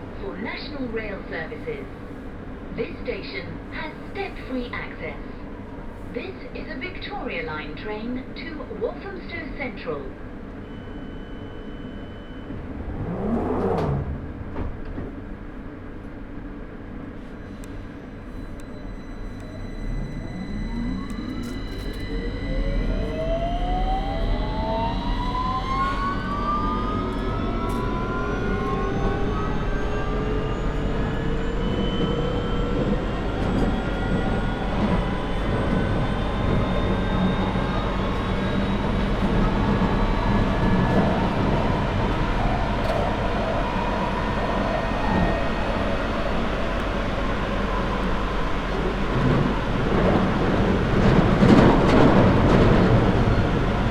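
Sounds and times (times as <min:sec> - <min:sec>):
train rumbling in tunnel: 0:00.0 - 0:53.9
train traction motors whining: 0:17.5 - 0:53.9.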